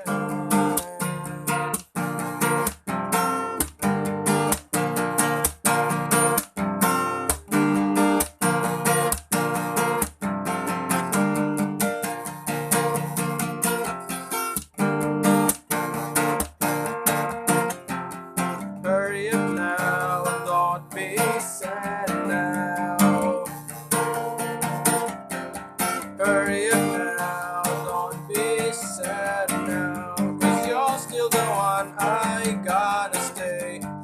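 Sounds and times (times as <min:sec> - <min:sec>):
acoustic guitar chords strummed: 0:00.0 - 0:34.0.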